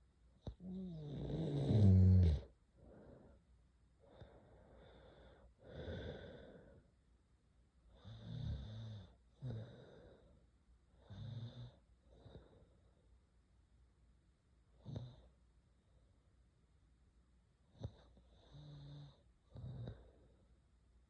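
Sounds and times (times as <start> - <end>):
low vibrating snore: 0.6 - 2.5
girl breathing: 4.0 - 6.9.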